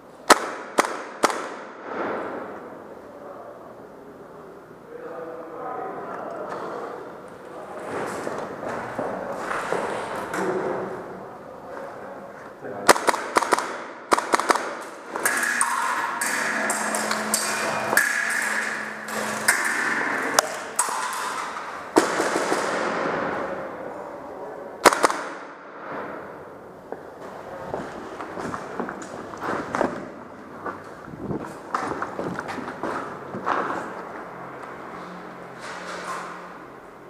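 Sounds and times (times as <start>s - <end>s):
airsoft guns firing bursts: 0.3s - 1.7s, 12.9s - 17.0s, 24.8s - 25.5s
voices: 3.0s - 13.0s.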